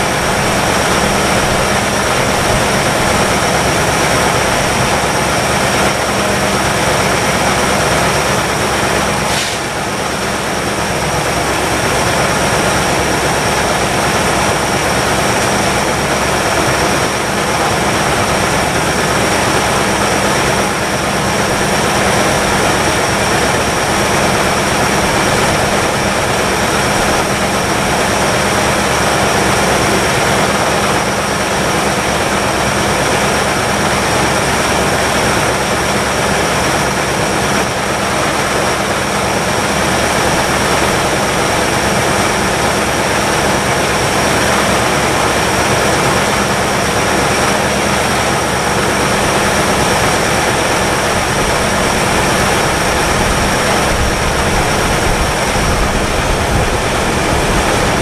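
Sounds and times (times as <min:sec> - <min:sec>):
car engine fast idling: 0:00.0 - 0:58.0
brief click: 0:09.3 - 0:09.6.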